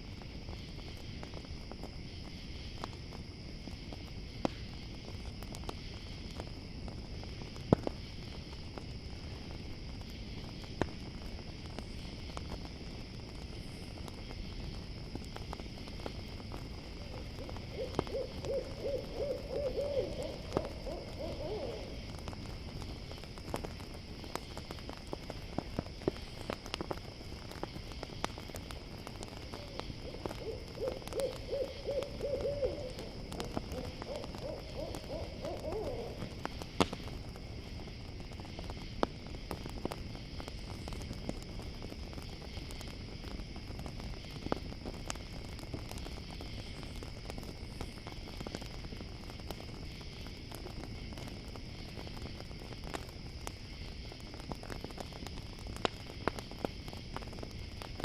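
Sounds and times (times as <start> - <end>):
campfire crackling and popping: 0.0 - 58.0
crickets chirping: 0.0 - 58.0
owl hooting: 17.0 - 22.0, 29.5 - 36.3.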